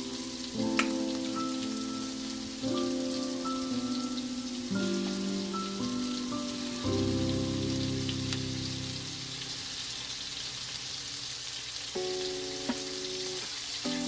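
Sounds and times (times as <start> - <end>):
background music chords: 0.0 - 9.6
food sizzling in a frying pan: 0.0 - 14.0.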